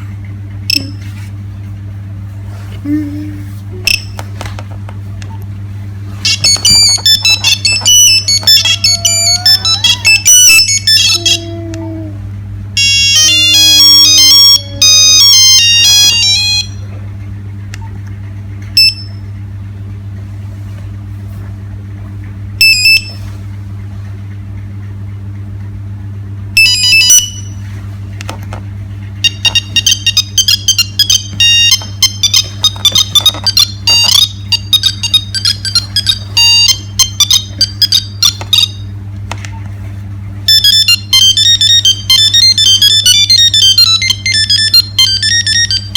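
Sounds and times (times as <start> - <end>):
mobile phone ringtones: 6.3 - 11.4, 12.8 - 16.8, 29.3 - 38.8, 40.5 - 45.9.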